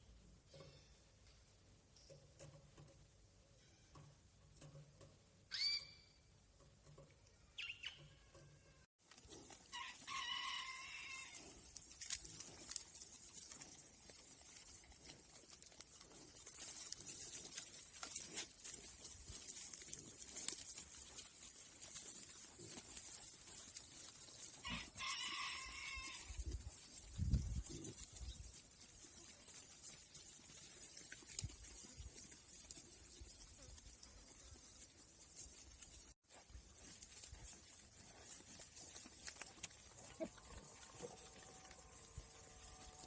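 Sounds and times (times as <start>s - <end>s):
chickens calling: 9.6s - 11.6s.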